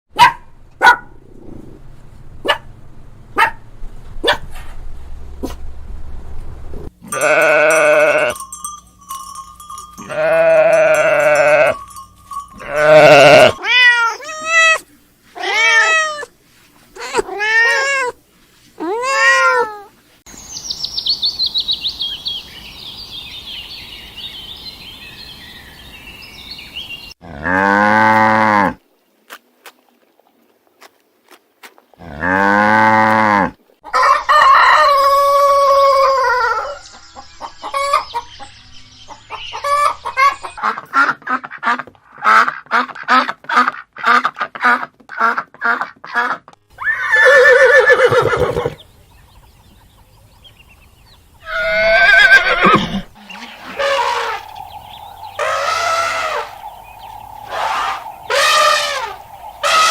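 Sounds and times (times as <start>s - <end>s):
farm animals calling: 7.0s - 8.4s, 10.0s - 16.3s, 32.0s - 38.5s, 39.1s - 59.9s
high chirping: 48.4s - 59.9s.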